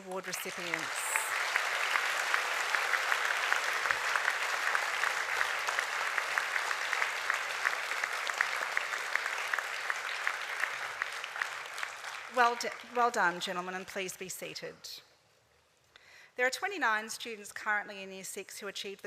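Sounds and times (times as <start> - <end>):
audience applauding: 0.0 - 13.1.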